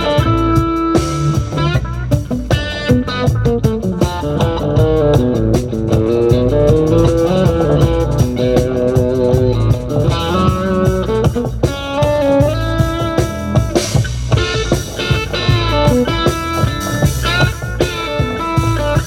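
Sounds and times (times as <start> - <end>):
electric guitar: 0.0 - 19.0
reggae band playing: 0.0 - 19.0.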